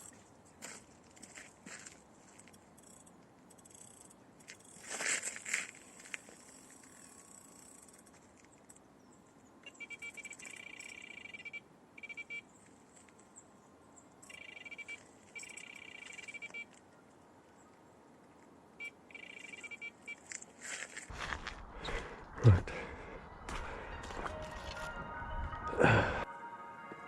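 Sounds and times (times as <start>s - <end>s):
bite alarm rapid high beeps: 9.6s - 12.4s, 14.2s - 16.7s, 18.8s - 20.2s.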